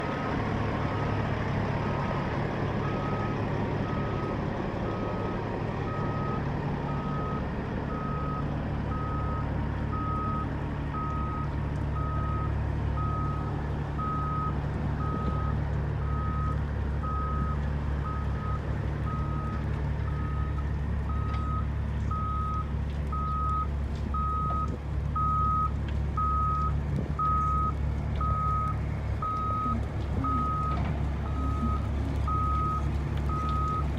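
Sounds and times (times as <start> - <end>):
diesel engine running: 0.0 - 33.9
travel alarm beeping: 16.1 - 33.9.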